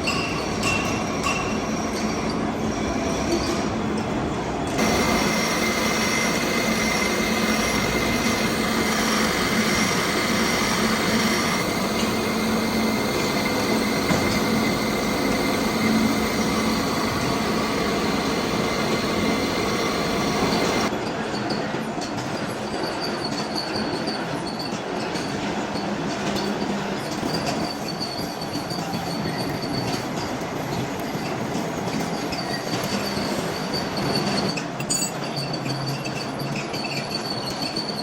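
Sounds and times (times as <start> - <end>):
cutting tool squealing on metal: 4.8 - 20.9
lathe running: 4.8 - 20.9.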